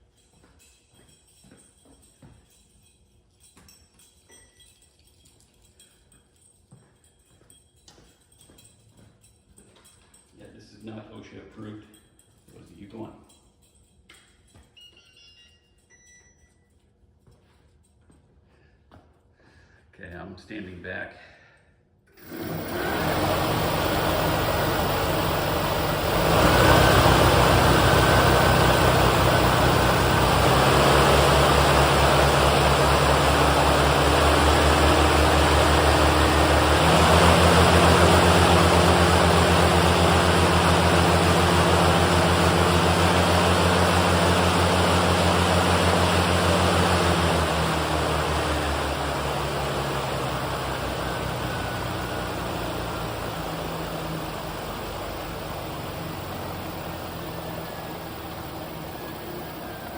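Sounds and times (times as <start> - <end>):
lawn mower droning: 22.2 - 59.9.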